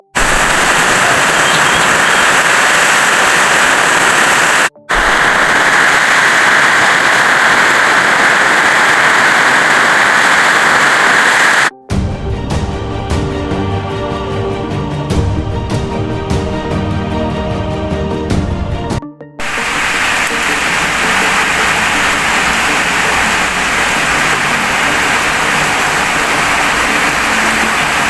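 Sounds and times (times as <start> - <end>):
heavy rain pouring: 0.0 - 11.7, 19.4 - 28.0
music: 11.7 - 28.0.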